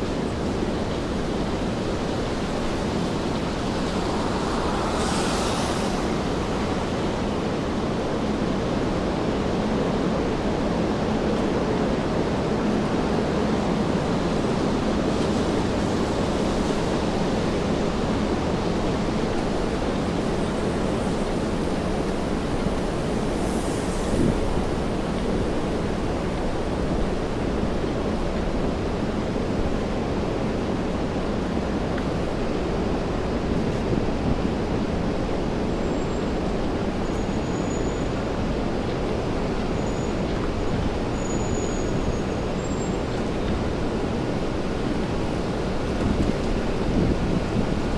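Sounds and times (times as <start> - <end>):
low traffic hum: 0.0 - 37.0
steady rainfall: 0.0 - 47.9.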